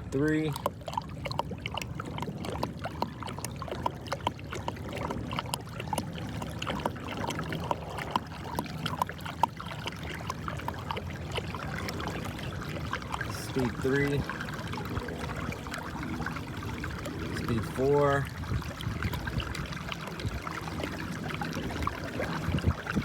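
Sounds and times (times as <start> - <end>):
water splashing along a hull: 0.0 - 23.0.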